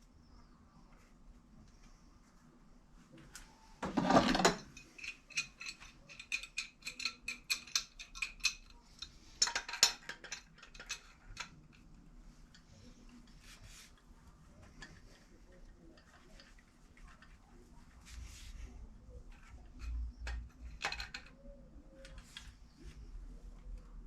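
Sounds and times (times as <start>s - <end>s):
metal parts clattering: 3.8s - 8.6s.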